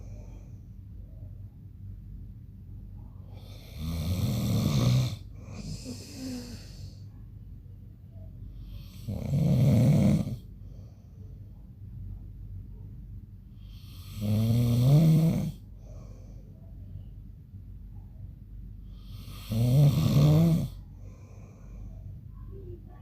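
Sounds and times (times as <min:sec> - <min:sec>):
soft breath: 0:00.0 - 0:01.3, 0:05.3 - 0:07.4, 0:10.4 - 0:11.9, 0:15.6 - 0:17.2, 0:20.8 - 0:23.0
man snoring: 0:03.4 - 0:06.9, 0:08.7 - 0:10.5, 0:13.6 - 0:15.6, 0:19.0 - 0:20.8.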